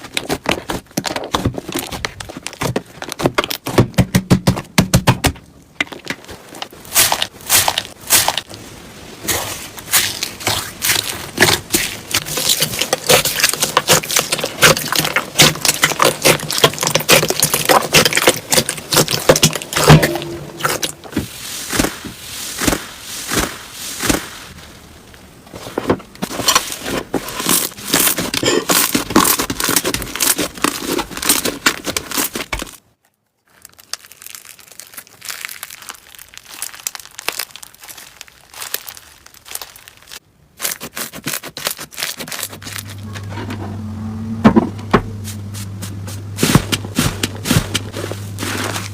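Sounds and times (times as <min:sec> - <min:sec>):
slime crackling and popping: 0:06.3 - 0:24.7, 0:26.2 - 0:43.0.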